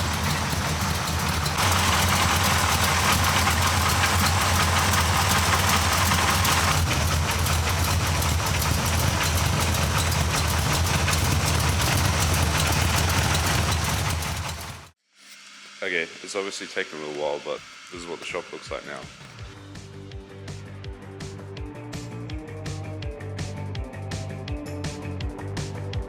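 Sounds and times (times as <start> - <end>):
vehicle engine idling: 0.0 - 14.9
hiss: 14.5 - 19.5.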